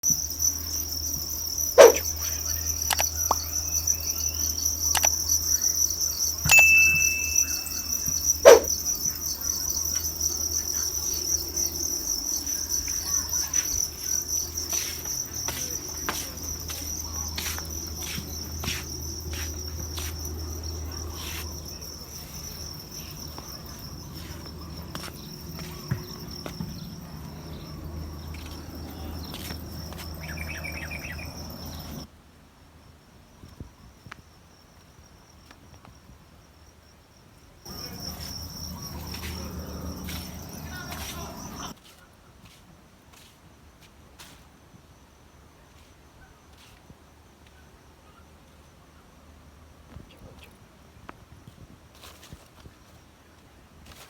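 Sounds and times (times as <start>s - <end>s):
crickets chirping: 0.0s - 41.8s
short high beep: 6.5s - 8.1s.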